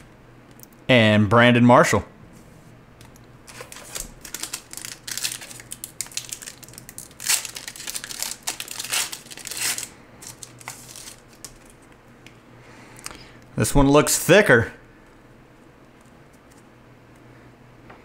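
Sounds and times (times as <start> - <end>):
foil wrapper crinkling and tearing: 3.5 - 11.8.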